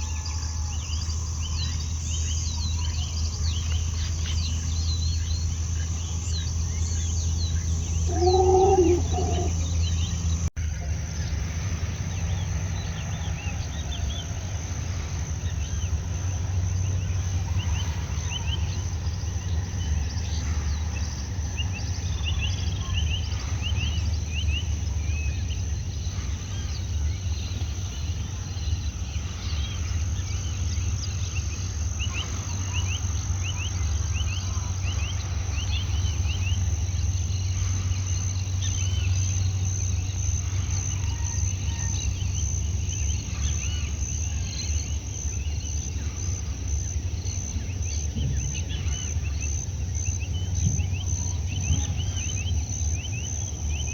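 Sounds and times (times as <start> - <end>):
bird chirps and calls: 8.0 - 9.7
high-pitched insect drone: 8.1 - 9.6.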